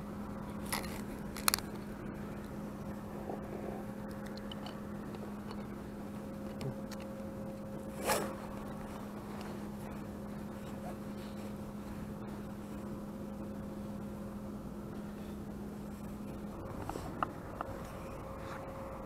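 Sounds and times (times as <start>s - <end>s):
steady low hum: 0.0s - 19.0s
crunch of biting a snack: 0.6s - 1.8s.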